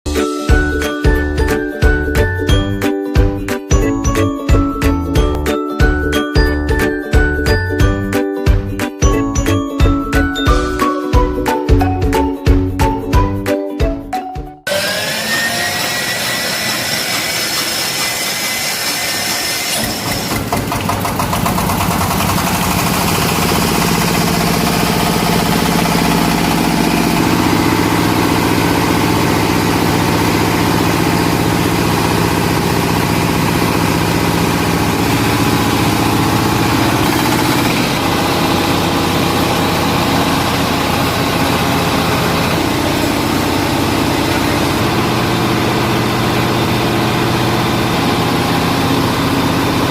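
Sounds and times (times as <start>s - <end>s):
heavy engine sound: 14.7s - 49.9s
rice huller machine hum: 14.7s - 49.9s.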